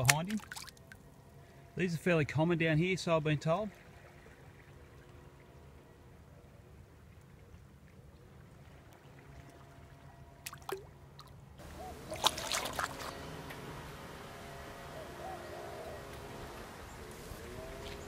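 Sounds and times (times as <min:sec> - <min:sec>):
sharp clicks and splashes: 0:00.0 - 0:01.0, 0:10.4 - 0:11.4, 0:12.1 - 0:13.2
water lapping at shore: 0:00.0 - 0:01.7, 0:03.2 - 0:13.7.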